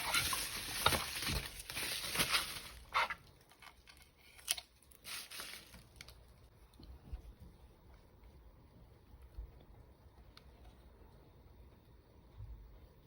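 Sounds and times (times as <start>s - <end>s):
packaging rustling and tearing: 0.0s - 6.2s.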